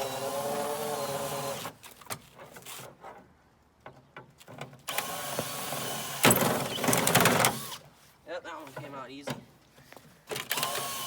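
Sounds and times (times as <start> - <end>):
cordless screw gun whining: 0.0 - 1.8, 4.9 - 7.8, 10.3 - 11.0.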